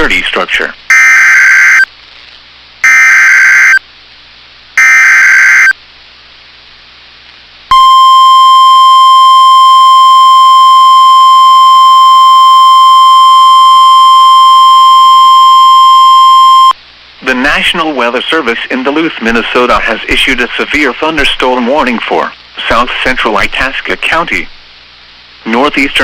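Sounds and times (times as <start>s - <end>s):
digital data bursts: 0.9s - 1.9s, 2.8s - 3.8s, 4.8s - 5.8s
steady warning alarm tone: 0.9s - 1.9s, 2.8s - 3.8s, 4.8s - 5.8s.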